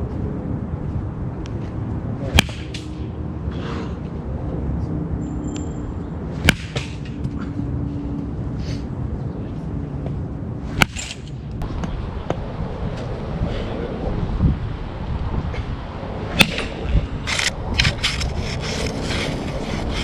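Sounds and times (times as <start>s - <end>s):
baseball bat cracking balls: 2.2s - 3.1s, 6.4s - 7.4s, 10.7s - 12.4s, 16.3s - 16.9s.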